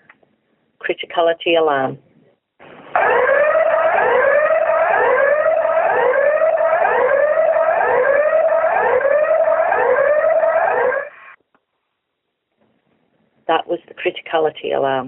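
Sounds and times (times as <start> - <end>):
rising whoop alarm: 3.0 - 11.1.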